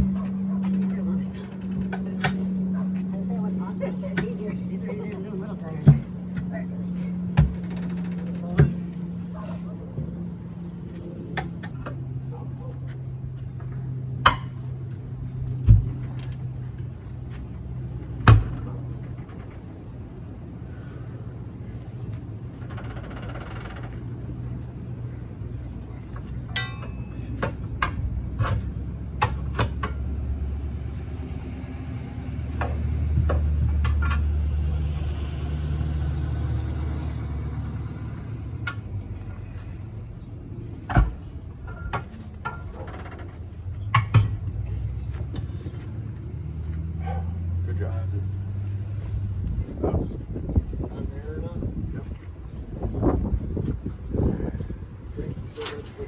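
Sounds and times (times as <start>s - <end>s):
engine running: 0.0s - 56.0s
sharp metallic knocks and clanks: 5.8s - 9.0s, 13.7s - 14.8s, 26.4s - 30.1s, 40.8s - 46.1s.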